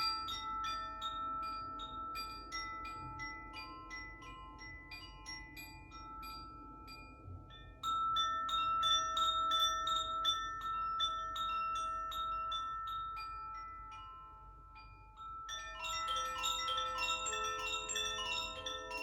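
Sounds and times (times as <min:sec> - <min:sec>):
tuned metal chimes struck: 0:00.0 - 0:19.0.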